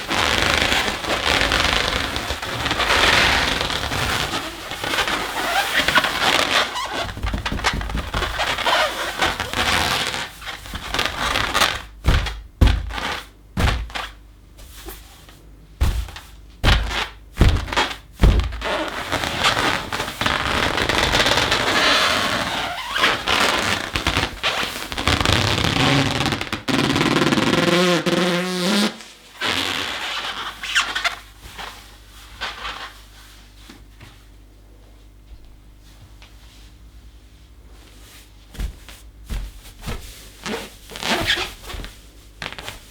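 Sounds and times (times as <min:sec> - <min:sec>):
balloon squeaking: 0:00.0 - 0:14.2, 0:15.8 - 0:31.3, 0:40.4 - 0:42.9
balloon being rubbed and squeezed: 0:00.0 - 0:15.0, 0:15.8 - 0:31.8, 0:39.8 - 0:42.9
dull thumps on balloon: 0:06.0 - 0:08.5, 0:10.7 - 0:14.2, 0:15.8 - 0:18.7.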